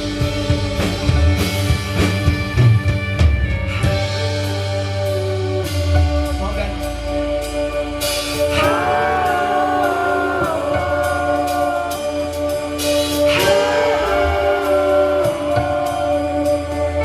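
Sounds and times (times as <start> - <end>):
live band playing: 0.0 - 17.0
person singing held phrases: 8.6 - 12.5, 13.3 - 16.5.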